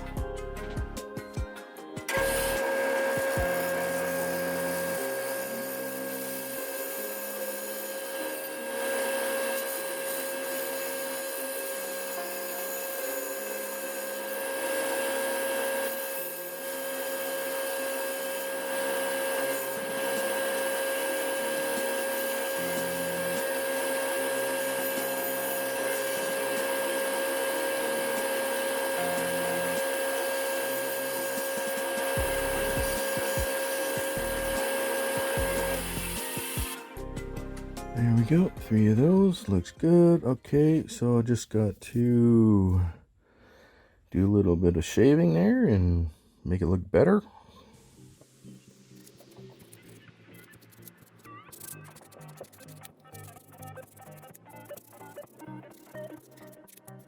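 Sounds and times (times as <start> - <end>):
small electric motor whine: 2.0 - 37.9, 47.7 - 57.0.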